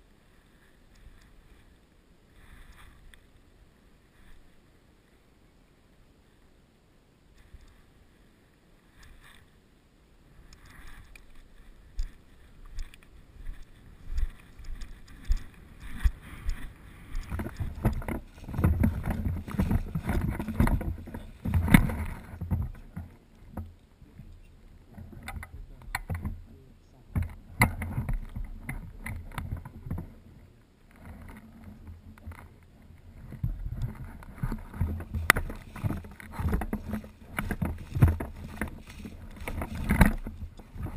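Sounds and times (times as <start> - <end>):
rustling movement noise: 0.0 - 5.4, 7.3 - 40.9
wind on microphone: 10.4 - 24.2, 31.1 - 40.9.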